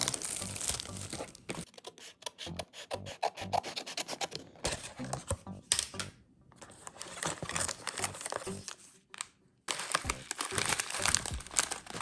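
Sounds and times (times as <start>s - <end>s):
plastic packaging crinkling: 0.0s - 1.7s, 6.7s - 12.0s.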